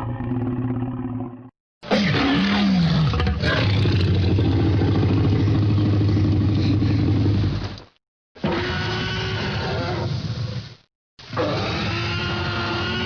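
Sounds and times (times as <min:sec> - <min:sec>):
dinosaur roar: 0:00.0 - 0:07.5.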